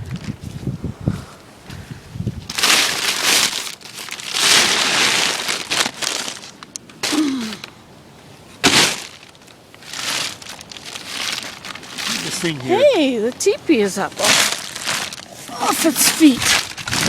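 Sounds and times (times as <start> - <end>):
wind gusts buffeting microphone: 0.0 - 2.6, 15.4 - 17.0.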